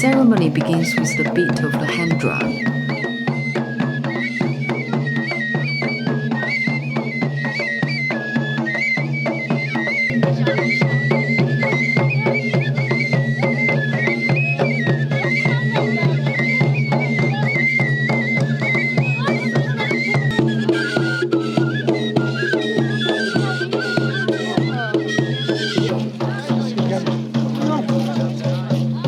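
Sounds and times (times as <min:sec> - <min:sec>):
high melody: 0:00.0 - 0:02.8
hand drums fast rhythm: 0:00.0 - 0:02.9.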